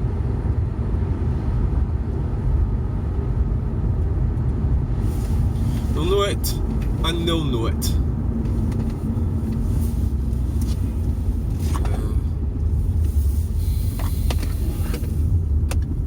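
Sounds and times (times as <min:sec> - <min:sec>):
car driving interior rumble: 0:00.0 - 0:16.0.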